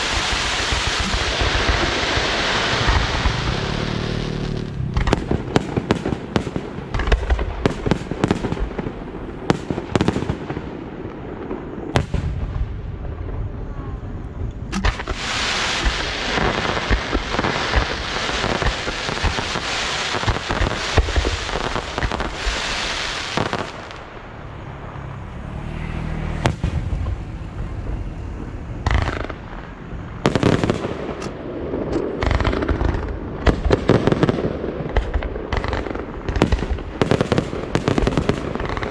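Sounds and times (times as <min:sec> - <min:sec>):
rapid firework crackling: 0:00.0 - 0:10.6, 0:14.8 - 0:24.3, 0:28.8 - 0:38.9
firework bangs: 0:00.0 - 0:13.8, 0:14.7 - 0:24.3, 0:26.2 - 0:38.9.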